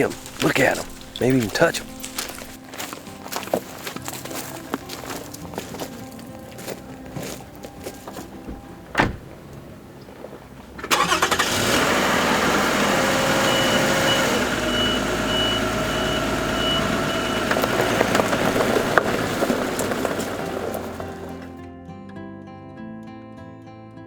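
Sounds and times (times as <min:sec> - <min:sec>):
car engine starting and running: 0:00.0 - 0:02.6, 0:08.4 - 0:21.6
thump: 0:08.5 - 0:09.3.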